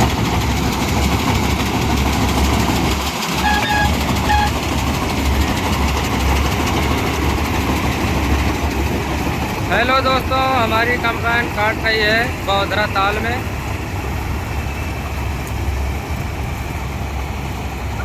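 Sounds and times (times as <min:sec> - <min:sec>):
combine harvester running: 0:00.0 - 0:18.0
brief high tones: 0:03.4 - 0:04.6.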